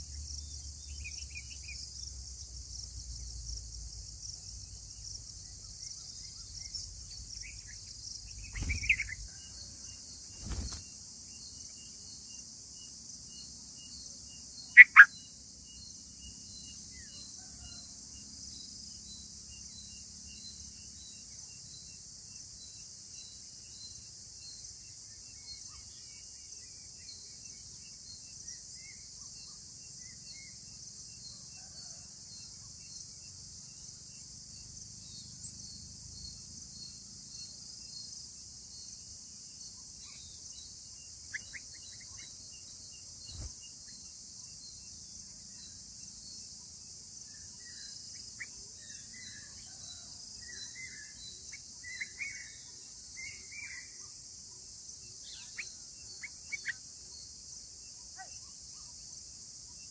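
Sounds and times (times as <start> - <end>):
insect chorus drone: 0.0 - 59.9
bird chirps: 5.6 - 10.9, 14.6 - 15.3, 41.0 - 44.1, 47.3 - 54.1, 55.2 - 56.8.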